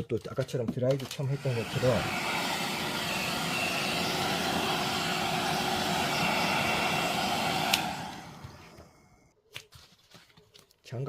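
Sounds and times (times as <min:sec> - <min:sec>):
hair dryer blowing: 0:01.2 - 0:09.2.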